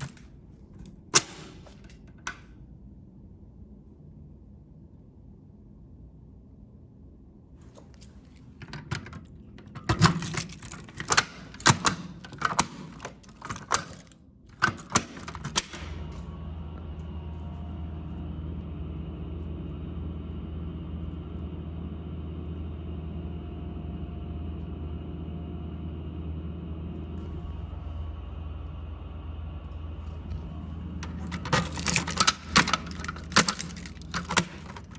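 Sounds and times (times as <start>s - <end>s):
electrical hum with hiss: 15.2s - 34.9s
sharp clicks and knocks: 31.0s - 34.9s.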